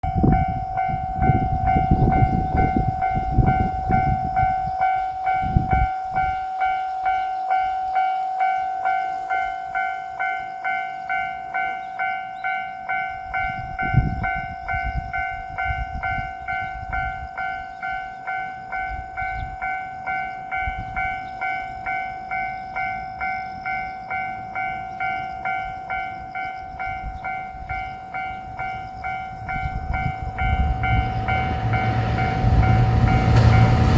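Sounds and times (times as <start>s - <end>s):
railroad crossing bell ringing: 0.0s - 33.9s
low rumble: 29.9s - 33.9s.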